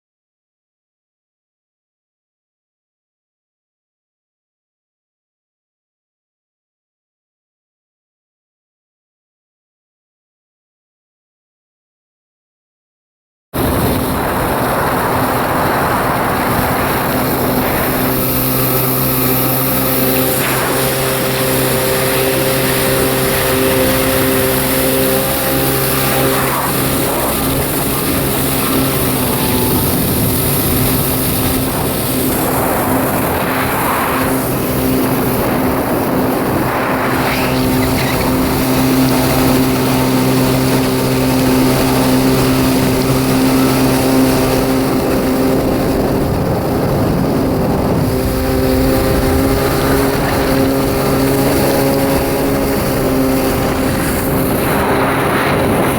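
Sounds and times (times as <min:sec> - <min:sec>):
jet ski engine running: 0:13.6 - 0:55.9
rush of water and wind: 0:13.6 - 0:55.9.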